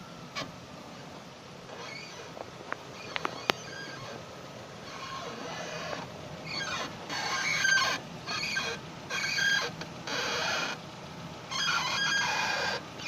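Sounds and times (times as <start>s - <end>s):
suspension squeaking: 0.0s - 13.0s.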